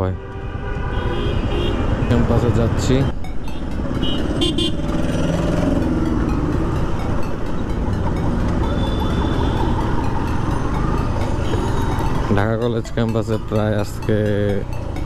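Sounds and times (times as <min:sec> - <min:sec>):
vehicle horn toots: 0:00.0 - 0:02.6, 0:03.5 - 0:04.9, 0:08.7 - 0:09.8
traffic noise: 0:00.0 - 0:15.0
wind: 0:00.0 - 0:15.0
motorcycle engine running: 0:03.3 - 0:12.3.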